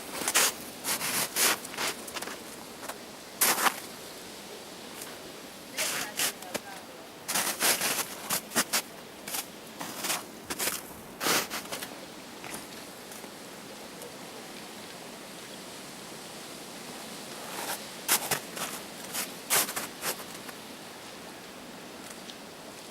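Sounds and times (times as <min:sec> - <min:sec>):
close rustling: 0:00.0 - 0:04.0, 0:04.9 - 0:13.3, 0:17.4 - 0:20.6
waterfall rushing: 0:05.2 - 0:09.2.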